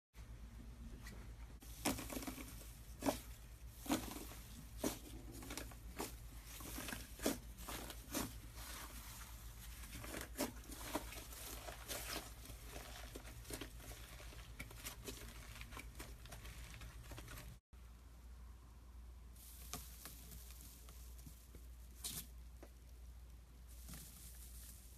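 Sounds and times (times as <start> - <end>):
low steady hum: 0.2 - 24.9.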